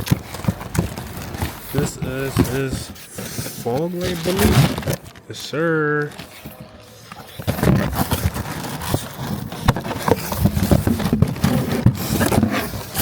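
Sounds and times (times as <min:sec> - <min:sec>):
cardboard packaging knocks and scraping: 0:00.0 - 0:05.2, 0:07.3 - 0:13.0.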